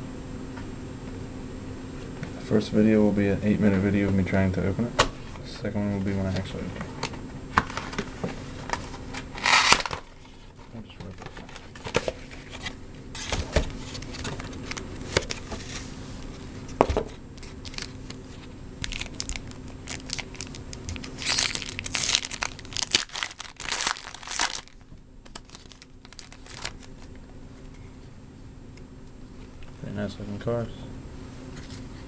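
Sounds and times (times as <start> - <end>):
plastic wrapping tearing and crinkling: 8.7 - 10.3, 17.4 - 27.2
quiet handling noises: 10.2 - 18.6.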